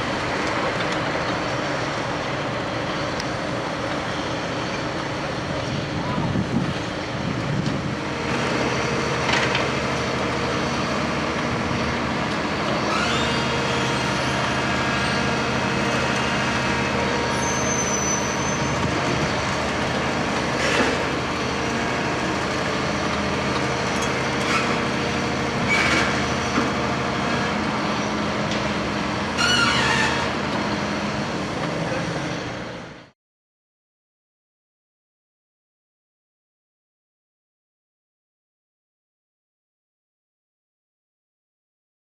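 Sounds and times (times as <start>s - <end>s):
diesel machinery running: 0.0s - 33.1s
squealing tone: 29.4s - 30.3s.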